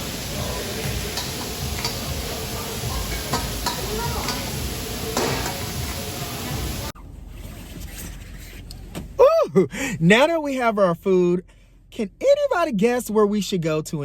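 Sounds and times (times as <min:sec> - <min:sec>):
utensils and dishes clinking: 0:00.0 - 0:06.9
murmur of voices: 0:00.0 - 0:07.0
kitchen noise: 0:00.0 - 0:08.4.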